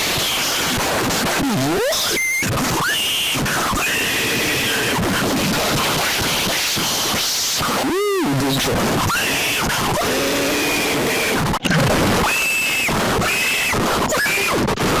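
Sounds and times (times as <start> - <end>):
distorted alarm tones swooping: 1.4 - 5.0
loud hiss: 3.0 - 7.8.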